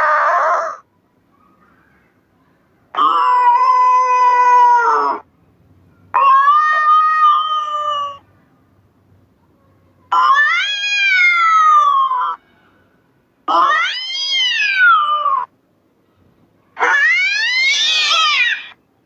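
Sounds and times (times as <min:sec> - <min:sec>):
cat meowing: 0:06.2 - 0:08.2, 0:10.1 - 0:12.4, 0:13.5 - 0:15.5, 0:16.8 - 0:18.8.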